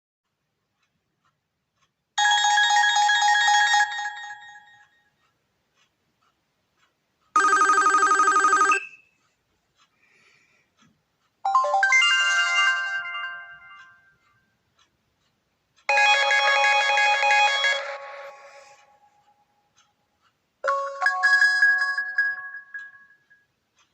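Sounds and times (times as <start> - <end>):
phone ringtone chiming melodies: 2.2 - 4.8, 7.4 - 9.0, 11.5 - 14.1, 15.9 - 19.2, 20.6 - 23.3.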